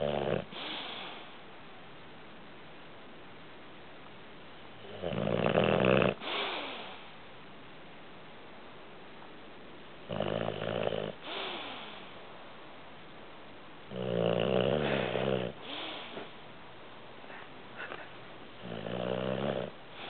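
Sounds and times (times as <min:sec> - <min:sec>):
pet snoring: 0:00.0 - 0:01.2, 0:04.8 - 0:07.0, 0:10.0 - 0:12.0, 0:13.9 - 0:16.3, 0:17.8 - 0:20.0.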